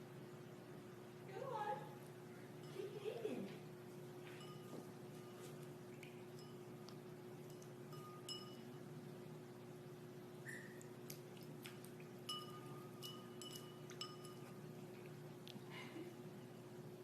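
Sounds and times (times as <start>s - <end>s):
steady low hum: 0.0s - 17.0s
faint clinks of metal or glass: 4.3s - 5.4s, 7.4s - 8.8s, 12.3s - 14.6s.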